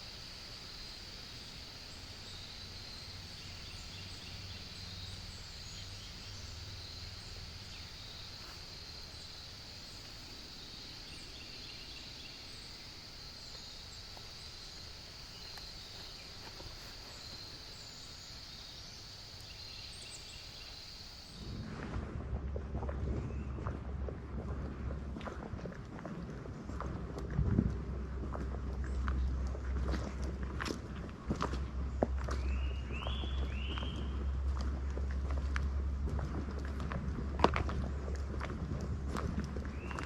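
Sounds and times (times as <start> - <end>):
low rumble: 21.3 - 40.0.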